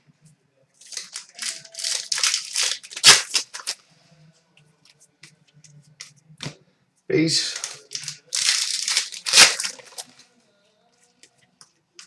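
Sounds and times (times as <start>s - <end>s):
wrapper crinkling and rustling: 0.8s - 3.8s, 7.4s - 10.2s.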